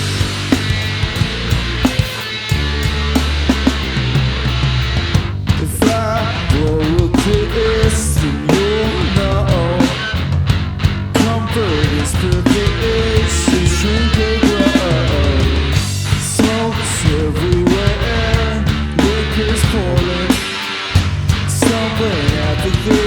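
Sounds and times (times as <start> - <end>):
electric guitar bending notes: 0.0 - 7.6
drums hitting steadily: 0.0 - 23.0
heavy rock band playing live: 0.0 - 23.0.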